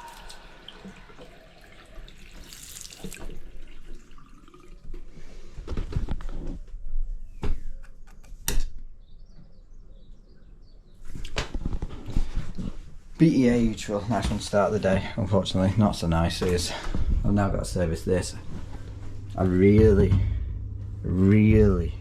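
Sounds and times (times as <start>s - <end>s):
tap water running into basin: 0.0s - 5.1s
sharp knocks: 19.7s - 22.0s.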